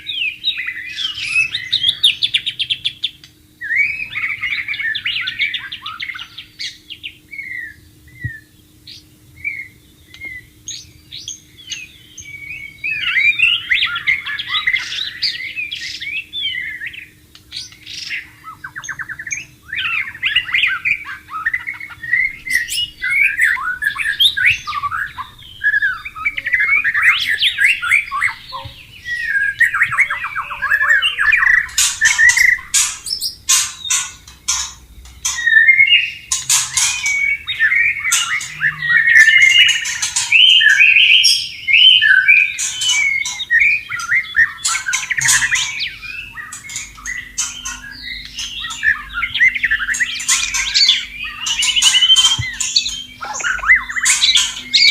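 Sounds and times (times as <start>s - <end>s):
bird singing warbled song: 0.0s - 54.9s.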